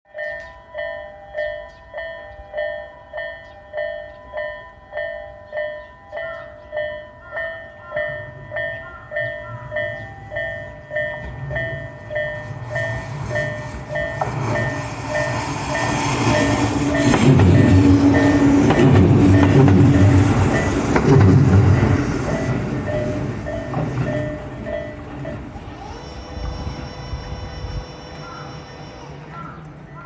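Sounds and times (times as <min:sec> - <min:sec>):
level crossing bell ringing: 0:00.1 - 0:20.9, 0:21.8 - 0:29.6
wheels clattering on rails: 0:05.8 - 0:30.0
electric train running: 0:07.2 - 0:30.0.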